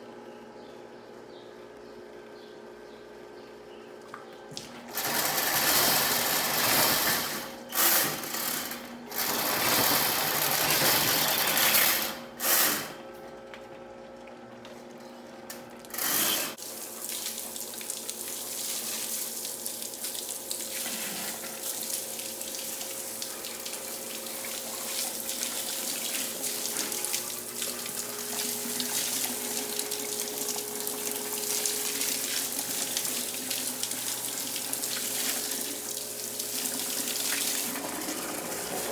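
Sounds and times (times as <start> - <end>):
tap water running into sink: 9.2 - 14.8, 15.4 - 38.9.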